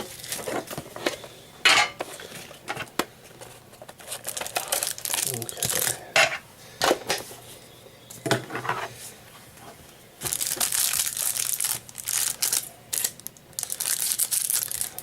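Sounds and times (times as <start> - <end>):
shrink-wrap crinkling and tearing: 0.1 - 0.7, 4.0 - 6.0, 10.2 - 15.0.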